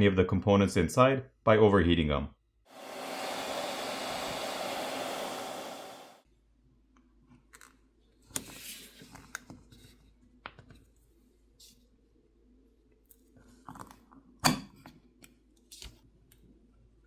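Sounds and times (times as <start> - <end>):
hairdryer blowing: 2.7 - 6.2.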